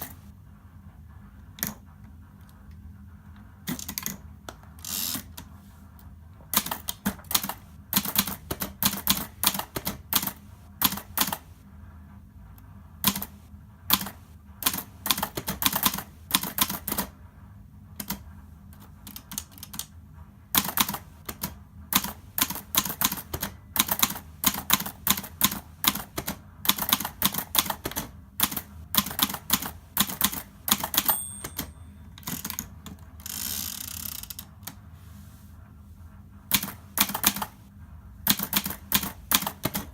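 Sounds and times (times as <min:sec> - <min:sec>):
typewriter key strikes: 0:20.6 - 0:32.6
typewriter bell ring: 0:30.7 - 0:32.6.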